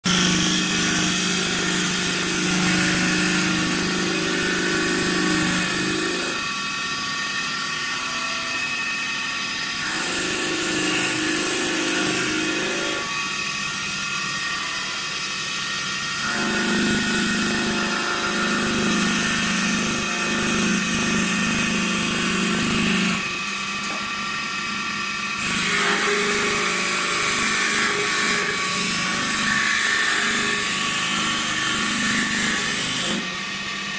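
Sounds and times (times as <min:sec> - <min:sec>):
cutter scraping wood: 0:00.0 - 0:06.6.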